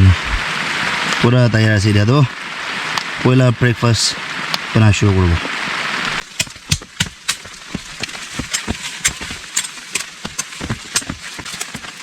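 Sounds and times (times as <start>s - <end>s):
sharp taps and clicks: 6.2s - 11.9s.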